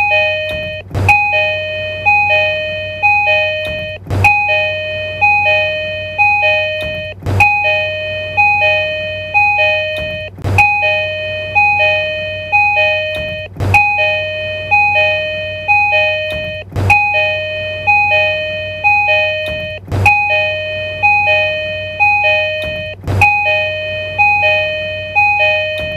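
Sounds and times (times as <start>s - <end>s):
train door two-note chime: 0.0s - 25.9s
sharp click: 3.6s - 4.0s.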